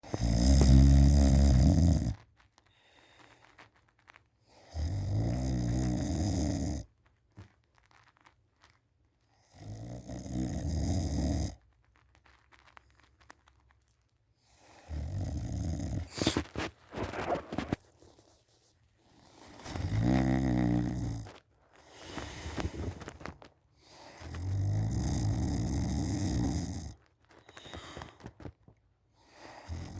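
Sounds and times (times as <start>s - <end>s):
person snoring loudly: 0.0s - 2.2s, 4.7s - 6.8s, 9.6s - 11.6s, 14.8s - 17.8s, 19.4s - 23.2s, 24.0s - 27.0s, 29.5s - 29.9s
quiet breaths: 0.0s - 8.0s, 14.3s - 29.9s.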